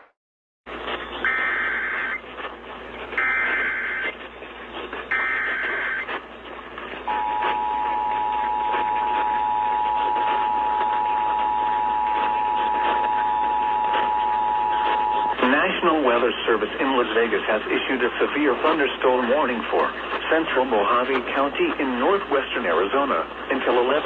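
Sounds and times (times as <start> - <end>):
radio hiss: 0.7 - 24.0
shrill data tones: 0.9 - 2.3, 3.0 - 6.2, 7.1 - 15.7
two-tone attention signal: 1.0 - 2.2, 3.2 - 4.2, 5.0 - 6.1, 7.1 - 15.6.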